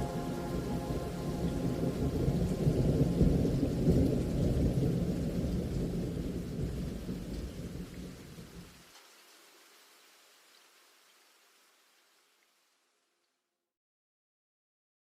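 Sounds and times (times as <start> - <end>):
waterfall rushing: 0.0 - 4.6.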